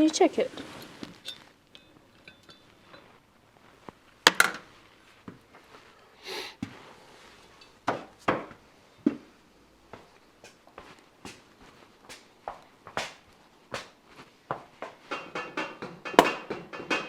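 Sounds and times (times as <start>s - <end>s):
tools knocking and clanking: 4.3s - 4.7s, 14.8s - 17.0s.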